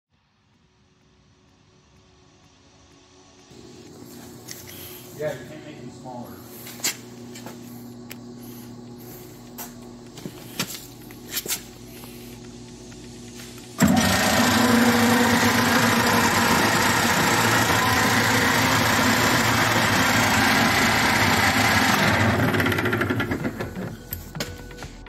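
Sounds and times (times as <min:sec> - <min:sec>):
metal lathe motor running: 0:13.7 - 0:23.9.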